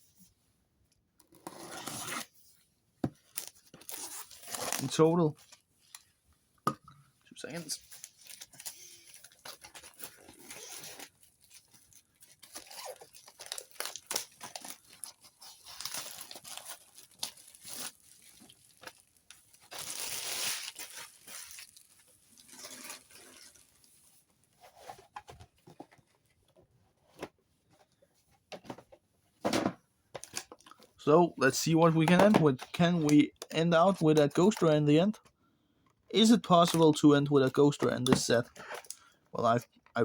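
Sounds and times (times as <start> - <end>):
plastic wrap and foil crinkling: 3.2 - 6.0, 7.4 - 24.3
packaging rustling: 7.6 - 26.0.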